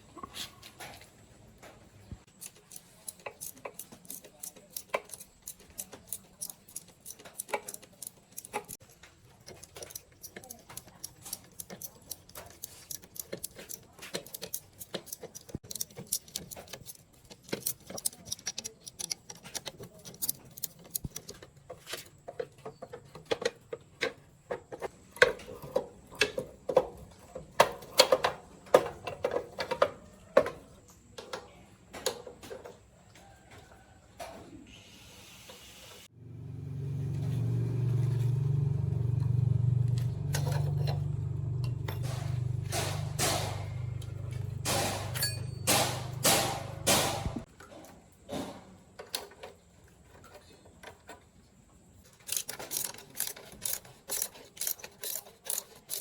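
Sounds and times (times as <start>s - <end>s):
hand tools clicking on metal: 2.2s - 30.5s, 39.2s - 47.5s, 52.0s - 56.0s
ringing metal clanks: 40.3s - 47.4s.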